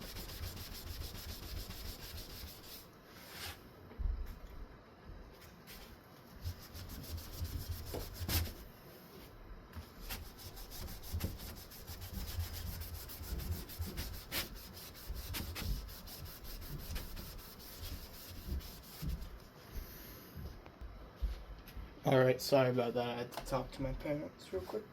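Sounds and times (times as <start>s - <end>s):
wipe rubbing fan blade: 0.0s - 3.5s, 6.4s - 8.6s, 10.0s - 19.4s.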